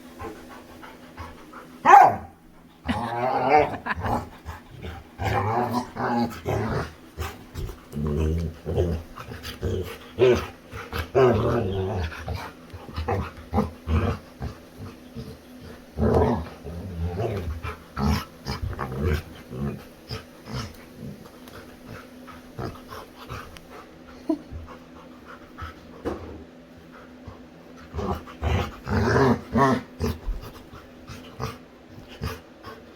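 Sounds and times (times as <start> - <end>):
dog panting: 0.0 - 2.9, 17.4 - 29.0.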